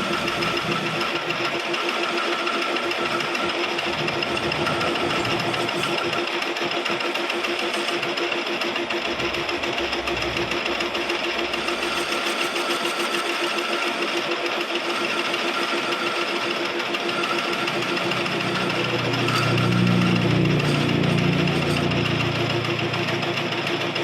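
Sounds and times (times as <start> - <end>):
lathe running: 0.0 - 24.0
low hum: 8.8 - 12.2, 18.0 - 24.0.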